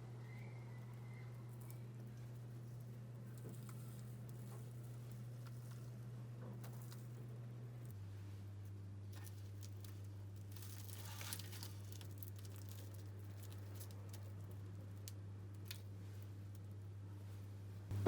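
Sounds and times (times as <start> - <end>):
paper or plastic rustling: 9.2 - 13.8
steady low hum: 14.0 - 18.0.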